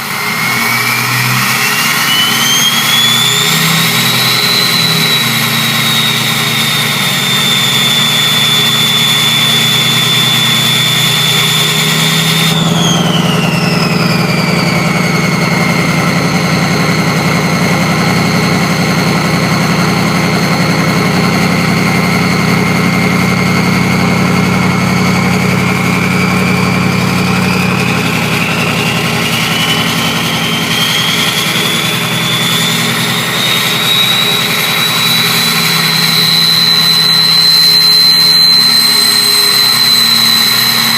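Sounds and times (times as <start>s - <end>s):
diesel engine running: 0.0s - 40.9s
high-pitched turbo whistle: 0.0s - 40.9s.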